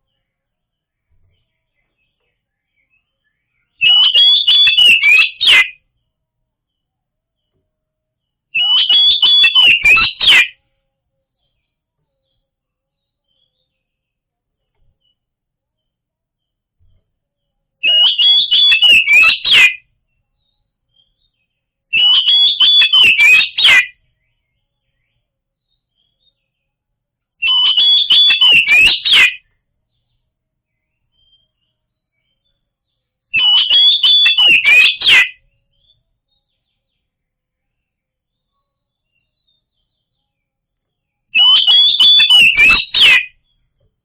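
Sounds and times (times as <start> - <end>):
bird song with whistles and clicks: 0.9 - 5.9, 8.6 - 10.6, 17.8 - 26.7, 27.4 - 43.9.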